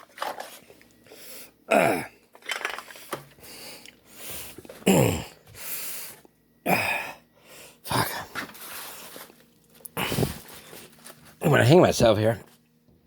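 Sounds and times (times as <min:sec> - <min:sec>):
breathy sounds: 0:01.0 - 0:02.2, 0:03.3 - 0:10.9
man's throaty vocal sounds: 0:01.7 - 0:02.1, 0:04.8 - 0:05.4, 0:06.6 - 0:07.2, 0:07.9 - 0:08.4, 0:10.0 - 0:10.4.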